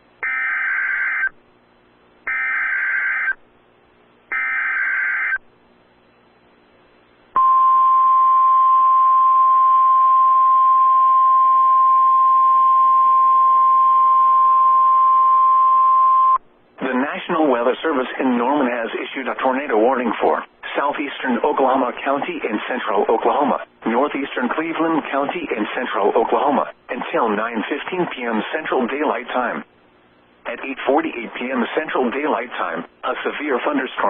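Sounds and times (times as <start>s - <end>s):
steady warning alarm tone: 0.2s - 1.3s, 2.3s - 3.4s, 4.3s - 5.4s, 7.4s - 16.4s.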